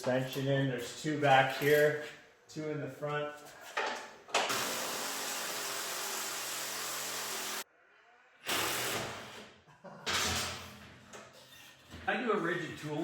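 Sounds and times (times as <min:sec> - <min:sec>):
cordless power tool running: 0:04.5 - 0:07.6.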